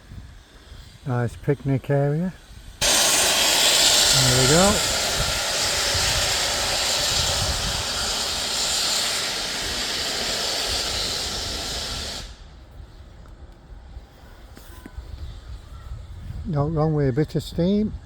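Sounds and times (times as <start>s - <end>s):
steam locomotive hissing: 0.0s - 13.2s.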